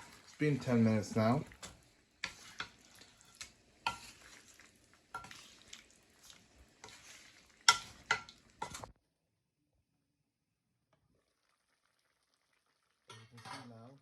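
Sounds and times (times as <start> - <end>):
spoon scraping pot: 0.0 - 8.9
sauce sizzling: 0.0 - 9.0, 11.1 - 13.2
spoon knocking against pot: 7.7 - 8.8.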